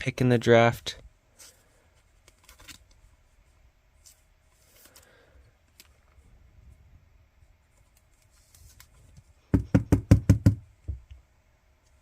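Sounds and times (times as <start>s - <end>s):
rapid dull knocking: 9.5s - 11.0s.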